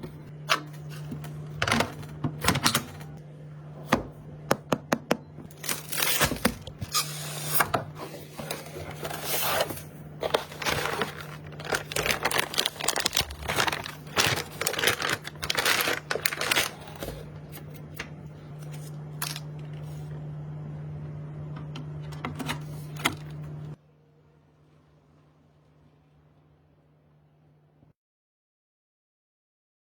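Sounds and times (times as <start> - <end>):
packaging rustling and tearing: 5.5 - 17.9.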